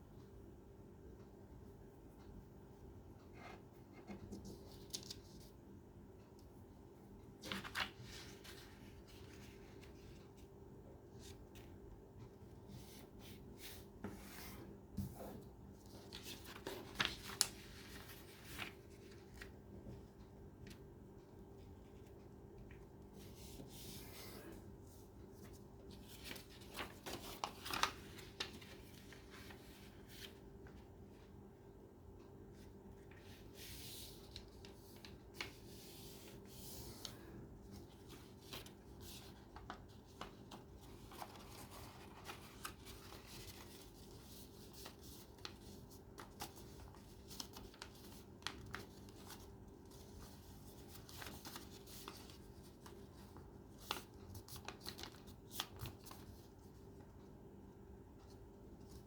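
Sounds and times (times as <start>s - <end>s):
paper rustling: 4.0s - 5.6s, 7.4s - 10.4s, 12.8s - 20.0s, 25.4s - 30.8s, 33.0s - 56.7s.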